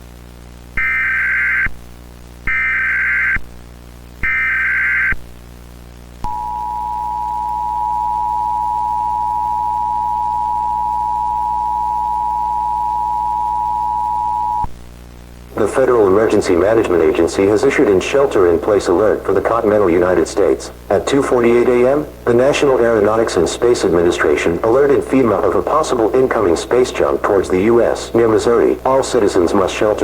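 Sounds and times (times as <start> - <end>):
faint hum: 0.0 - 30.0
data tone bursts: 0.8 - 1.8, 2.5 - 3.4, 4.2 - 5.2, 6.2 - 14.7
two-tone attention signal: 6.3 - 14.7.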